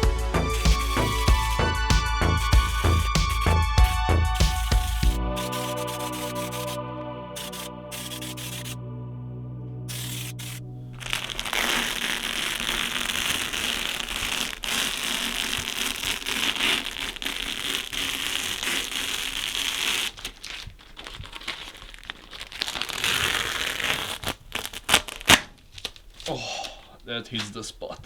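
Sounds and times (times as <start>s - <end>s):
paint spray hissing: 0.0s - 8.8s, 9.9s - 15.1s
background music: 0.0s - 11.7s.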